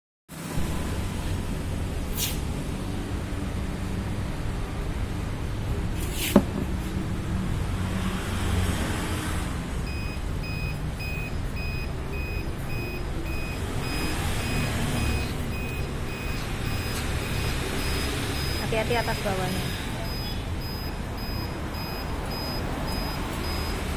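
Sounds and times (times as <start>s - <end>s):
short high electronic beeps: 9.9s - 23.9s.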